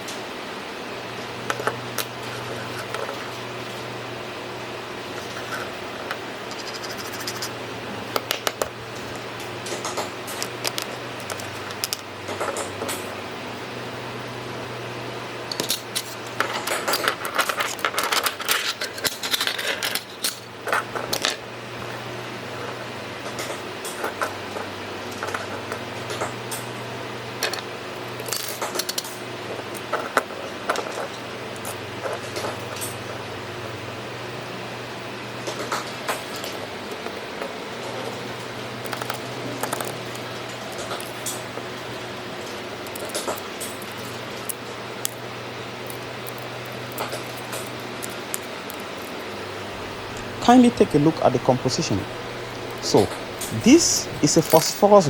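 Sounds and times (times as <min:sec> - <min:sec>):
steady low hum: 0:00.0 - 0:55.0
small metal and plastic parts clicking: 0:09.8 - 0:12.7, 0:15.5 - 0:21.3, 0:28.2 - 0:29.1, 0:38.8 - 0:41.4, 0:42.4 - 0:45.2, 0:45.8 - 0:49.2.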